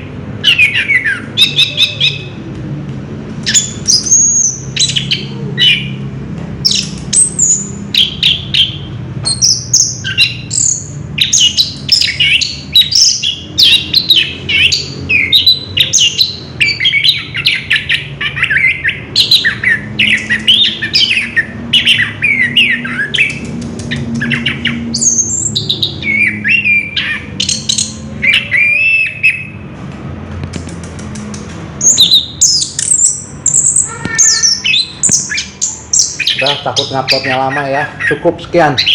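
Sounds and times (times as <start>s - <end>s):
thrush singing varied whistles: 24.1s - 29.6s.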